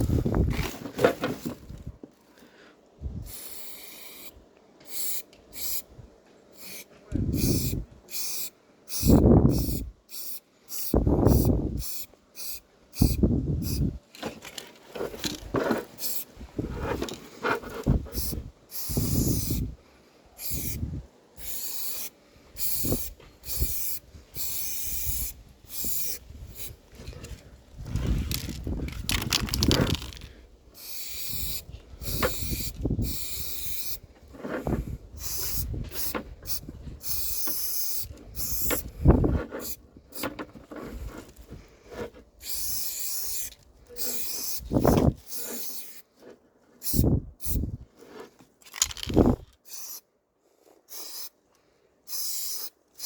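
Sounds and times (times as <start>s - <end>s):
spray can hissing: 3.2s - 4.3s, 4.9s - 5.8s, 6.6s - 6.8s, 7.4s - 13.9s, 16.0s - 16.3s, 18.1s - 19.7s, 20.4s - 20.8s, 21.4s - 26.8s, 29.1s - 34.0s, 35.2s - 38.9s, 39.6s - 39.8s, 42.4s - 46.0s, 46.8s - 47.6s, 48.7s - 50.0s, 50.9s - 51.3s, 52.1s - 53.0s.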